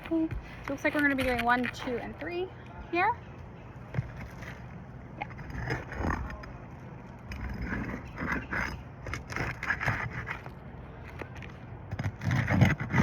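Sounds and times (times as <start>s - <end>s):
pry tool scraping shingles: 7.3s - 10.5s, 11.9s - 13.0s.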